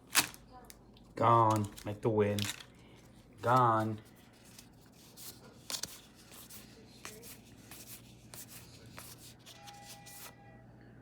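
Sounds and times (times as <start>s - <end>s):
trading cards rubbing: 3.4s - 10.4s.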